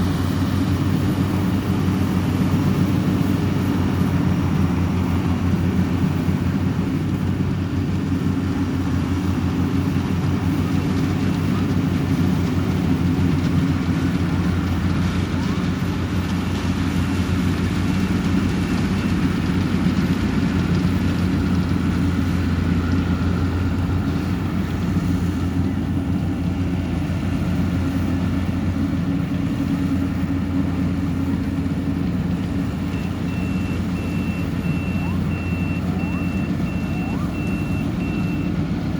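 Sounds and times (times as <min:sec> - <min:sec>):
diesel engine running under load: 0:00.0 - 0:38.9
reversing beeper: 0:21.4 - 0:24.4, 0:32.9 - 0:38.7.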